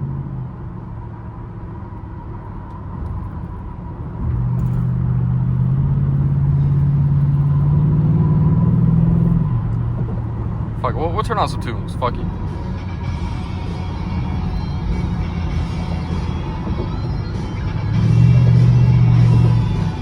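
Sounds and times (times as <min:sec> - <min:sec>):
car engine accelerating: 0:00.0 - 0:20.0.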